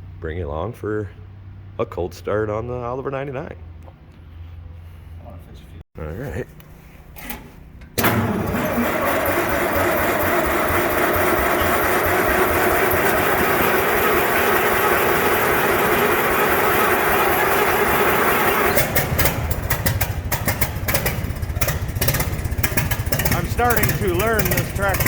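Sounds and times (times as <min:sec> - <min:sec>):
starter cranking engine: 0:07.2 - 0:25.0
tractor engine running unevenly: 0:07.8 - 0:25.0.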